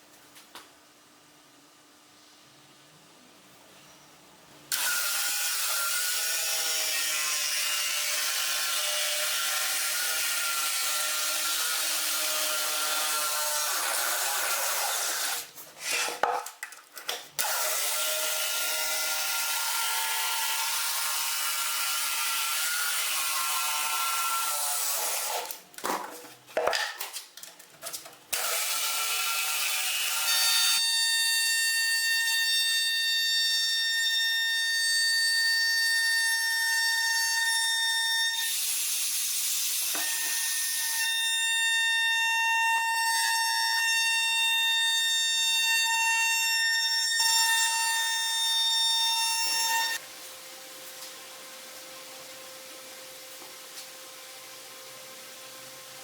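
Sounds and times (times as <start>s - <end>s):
power tool high-pitched whine: 4.7s - 14.2s, 28.4s - 56.0s.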